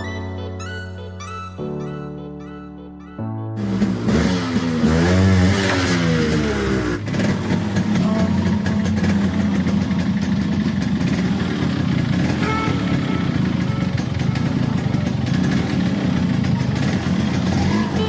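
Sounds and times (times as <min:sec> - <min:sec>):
two-stroke engine revving: 0:03.6 - 0:18.0.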